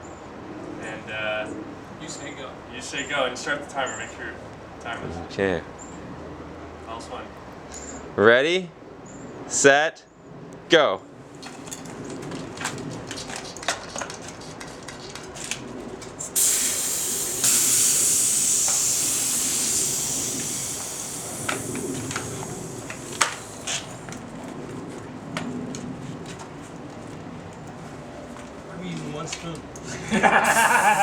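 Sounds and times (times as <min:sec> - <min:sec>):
clicks and knocks from handling wheels: 0:11.4 - 0:16.3
air hissing from tyre valves: 0:16.2 - 0:24.0, 0:30.3 - 0:31.0.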